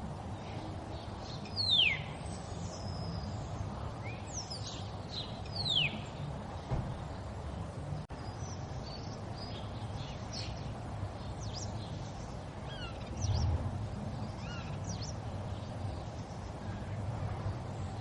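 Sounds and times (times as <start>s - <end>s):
high bird chirps and calls: 1.2s - 6.1s, 12.6s - 13.5s, 14.2s - 15.2s.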